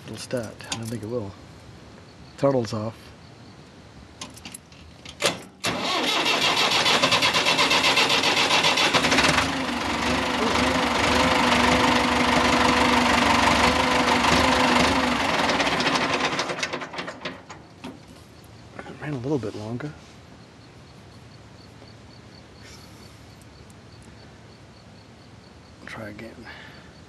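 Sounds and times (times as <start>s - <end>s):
engine running: 5.6s - 18.2s.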